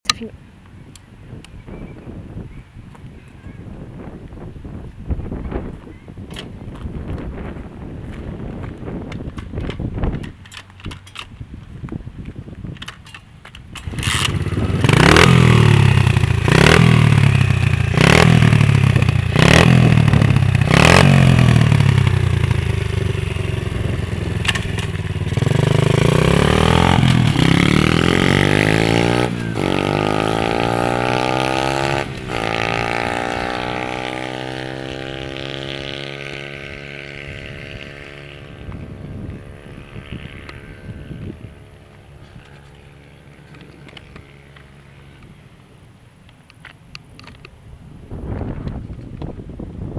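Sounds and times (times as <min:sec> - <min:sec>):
dirt bike engine revving: 0:13.8 - 0:41.4.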